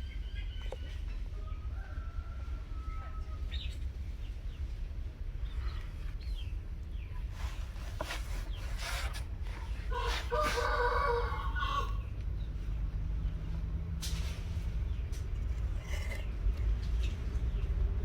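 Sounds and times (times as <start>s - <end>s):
rooster crowing: 1.4s - 3.5s, 9.9s - 12.0s.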